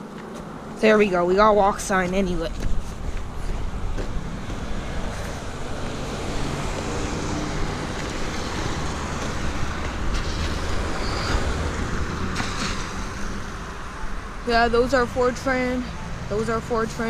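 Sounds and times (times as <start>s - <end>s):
road traffic passing: 0.0s - 17.0s.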